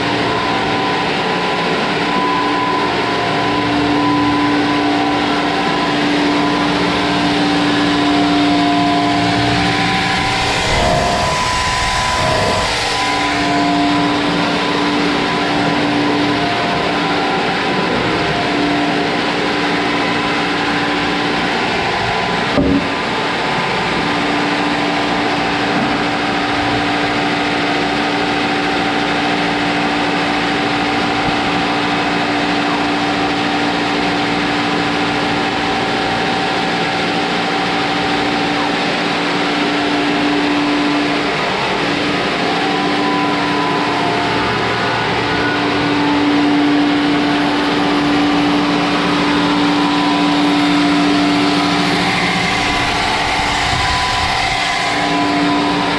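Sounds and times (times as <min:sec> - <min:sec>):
sawmill machinery din: 0:00.0 - 0:55.9
sharp knock: 0:22.6 - 0:23.0.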